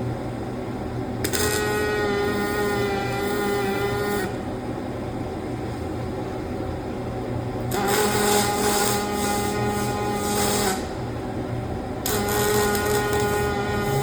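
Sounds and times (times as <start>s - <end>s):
arc welder crackling: 1.2s - 4.4s, 7.6s - 11.1s, 12.0s - 14.0s.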